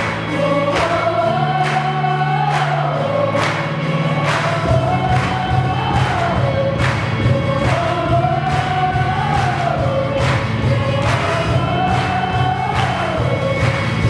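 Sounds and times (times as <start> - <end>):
group singing a praise song: 0.0 - 14.0
instrumental accompaniment with beat: 0.0 - 14.0.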